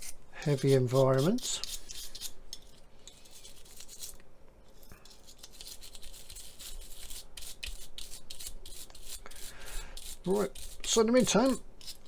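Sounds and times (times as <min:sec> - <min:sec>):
small tool scratching plastic: 0:00.0 - 0:04.2, 0:05.0 - 0:12.0.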